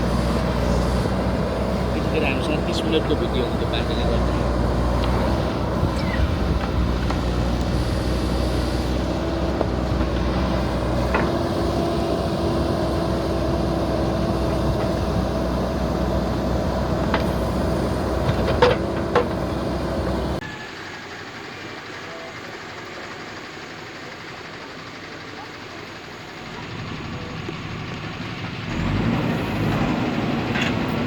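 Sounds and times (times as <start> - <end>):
diesel engine running: 0.0 - 31.0.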